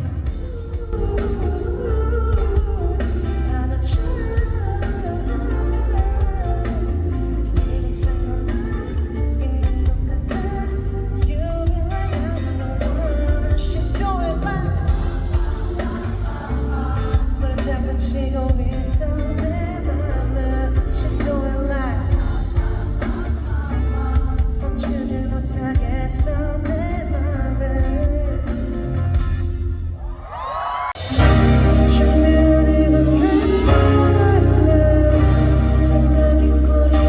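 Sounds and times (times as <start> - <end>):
person singing: 0.0 - 28.9, 30.8 - 37.0
live band music: 0.0 - 30.2, 30.9 - 37.0.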